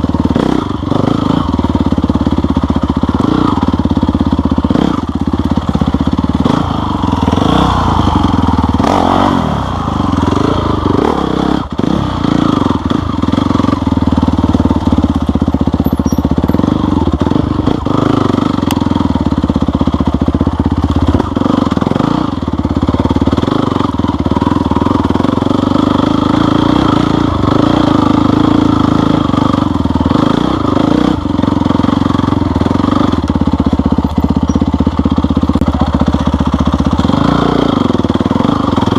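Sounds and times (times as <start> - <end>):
off-road vehicle engine revving: 0.0 - 1.7, 3.1 - 14.8, 16.0 - 19.0, 20.6 - 38.9.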